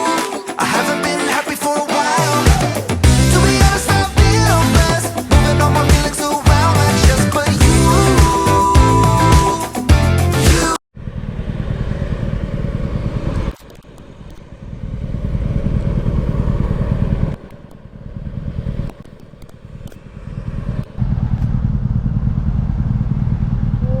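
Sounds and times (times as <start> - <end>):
motorcycle engine running: 2.5 - 24.0
wind on microphone: 11.0 - 24.0.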